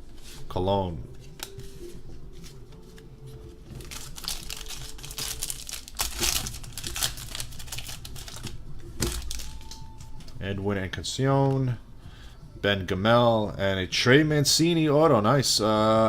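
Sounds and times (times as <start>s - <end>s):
wrapper crinkling and tearing: 3.7s - 10.4s.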